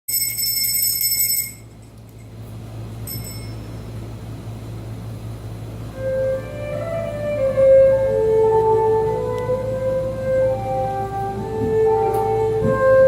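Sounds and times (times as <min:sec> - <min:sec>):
high metallic ringing tone: 0:00.1 - 0:04.2
low steady hum: 0:00.1 - 0:13.0
flute playing slow melody: 0:05.7 - 0:13.0.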